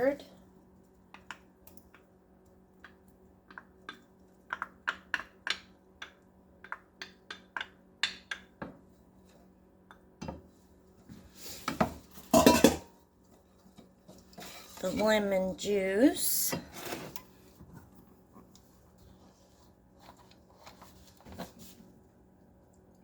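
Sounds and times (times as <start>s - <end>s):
dishes clattering: 11.8s - 13.0s
spoon clinking on kitchenware: 12.3s - 12.9s.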